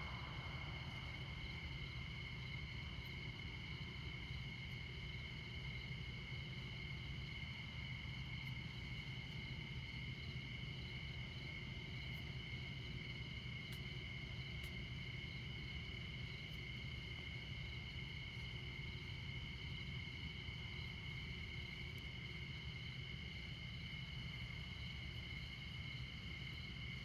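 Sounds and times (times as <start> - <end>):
distant traffic rumble: 0.0 - 4.6
crickets chirping: 0.0 - 27.0.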